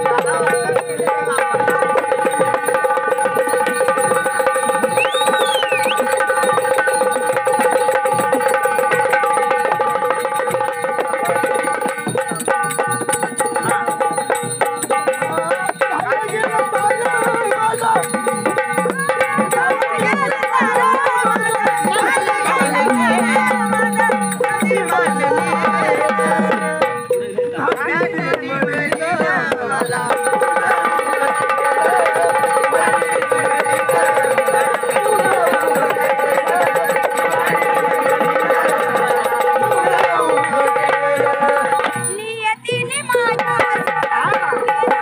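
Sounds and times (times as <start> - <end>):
hand drums playing fast rhythm: 0.0 - 45.0
wavering melody line: 19.4 - 27.0.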